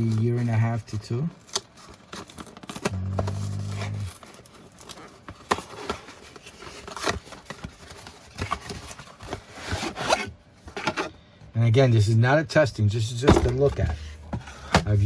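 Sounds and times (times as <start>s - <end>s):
cardboard box being handled: 3.1s - 11.0s.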